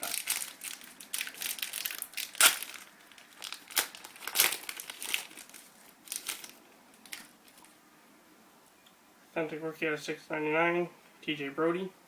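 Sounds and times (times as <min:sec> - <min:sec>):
foil wrapper crinkling and tearing: 0:00.0 - 0:07.8.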